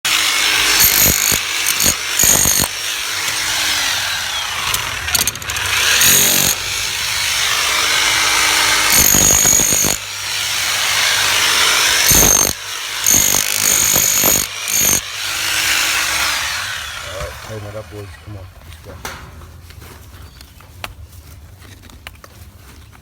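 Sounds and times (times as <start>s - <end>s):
power tool running: 0.0s - 19.4s.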